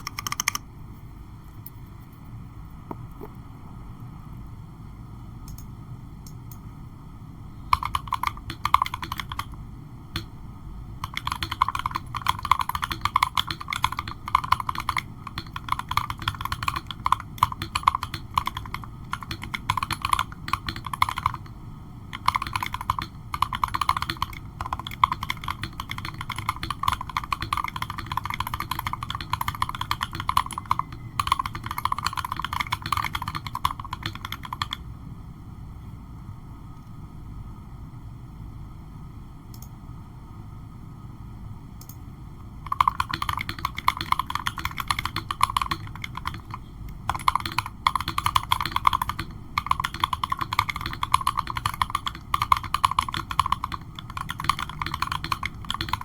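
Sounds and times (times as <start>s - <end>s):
typing on mechanical keyboard: 0.0s - 0.6s, 7.7s - 9.6s, 11.0s - 21.5s, 22.1s - 34.8s, 42.7s - 56.0s.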